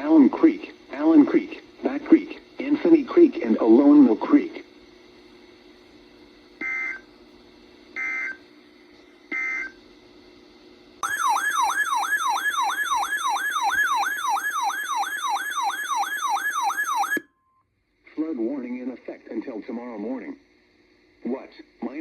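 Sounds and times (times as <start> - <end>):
faint receiver hum: 0.0 - 22.0
siren-like alert tone: 11.0 - 17.3.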